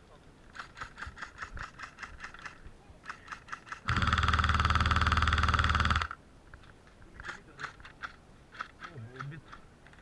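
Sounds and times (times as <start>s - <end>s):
airsoft gun full-auto burst: 3.6s - 6.2s.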